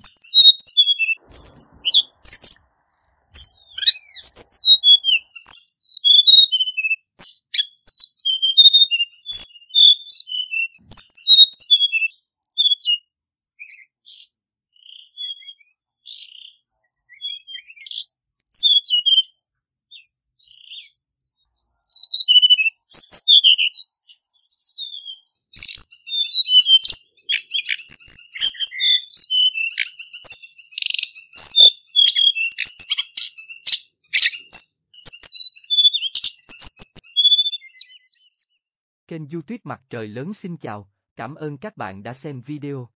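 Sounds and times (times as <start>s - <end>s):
bird singing high sweet notes: 0.0s - 39.5s.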